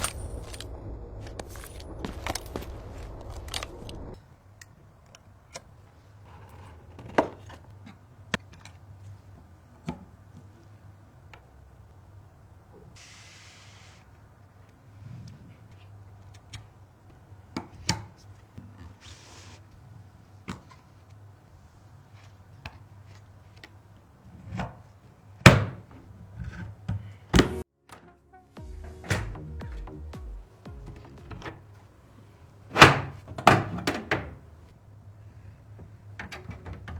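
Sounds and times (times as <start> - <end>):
low steady rumble: 0.0 - 4.2
computer parts clicking and knocking: 32.7 - 34.6.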